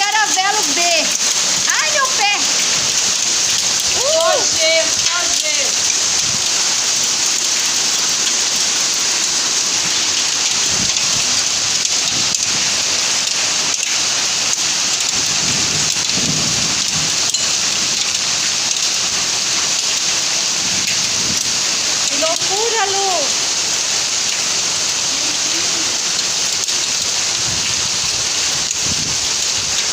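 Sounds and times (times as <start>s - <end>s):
hail and heavy rain: 0.0s - 29.9s
hailstones clicking: 0.0s - 29.9s.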